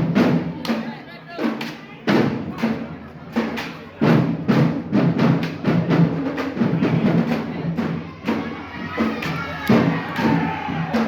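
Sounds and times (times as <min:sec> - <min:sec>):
drumline playing a cadence: 0:00.0 - 0:11.0.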